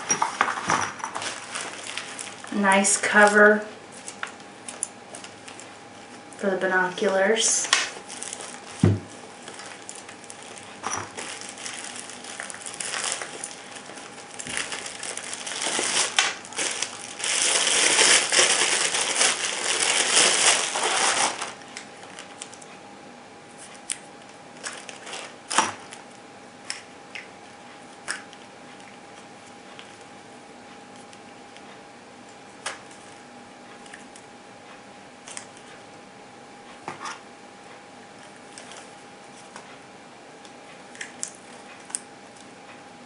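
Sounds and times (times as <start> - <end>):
packaging crinkling and rustling: 0.0 - 6.2, 6.8 - 22.7, 23.6 - 26.2, 38.2 - 39.7.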